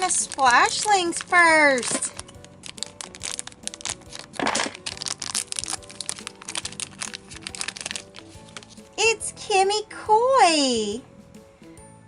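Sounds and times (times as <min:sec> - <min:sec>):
wrapper ripping: 0:00.0 - 0:08.9
plastic wrapper crinkling: 0:00.0 - 0:09.0
background music: 0:00.0 - 0:12.0.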